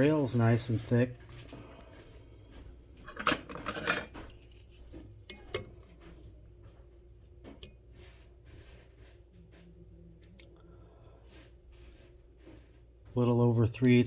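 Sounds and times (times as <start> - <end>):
metal vise and tool clinking: 3.0 - 4.3.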